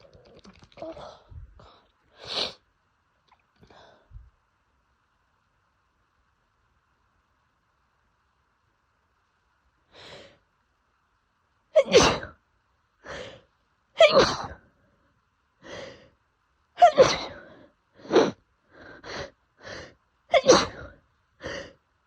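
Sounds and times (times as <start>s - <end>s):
woman sneezing: 11.8s - 12.3s, 14.0s - 14.6s, 16.8s - 17.4s, 20.3s - 20.9s.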